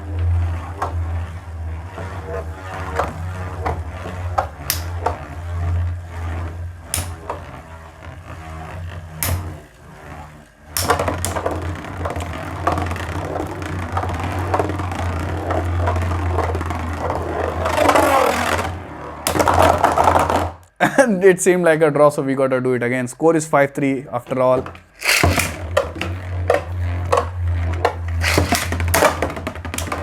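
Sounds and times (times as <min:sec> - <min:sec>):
spinning tops whirring and clattering: 0:02.8 - 0:05.5, 0:06.9 - 0:07.7, 0:09.2 - 0:09.8, 0:10.7 - 0:20.6, 0:24.6 - 0:30.0
spinning tops clacking: 0:04.7 - 0:05.1, 0:06.9 - 0:07.4, 0:09.2 - 0:09.6, 0:10.8 - 0:11.6, 0:24.9 - 0:26.6, 0:27.9 - 0:30.0.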